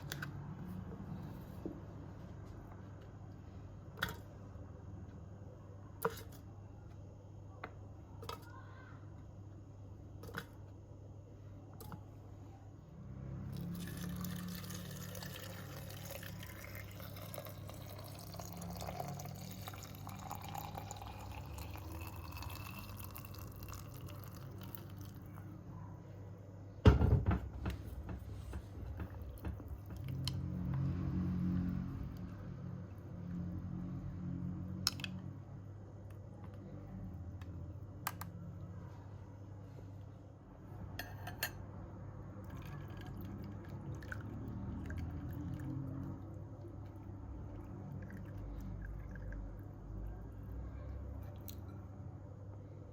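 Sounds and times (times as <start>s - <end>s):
liquid pouring into container: 13.5s - 25.4s, 42.3s - 50.6s.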